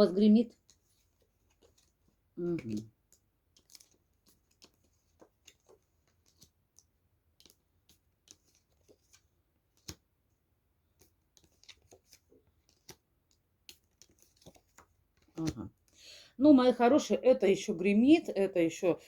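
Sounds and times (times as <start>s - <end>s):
cards clicking and tapping: 0.6s - 10.2s, 10.8s - 16.0s.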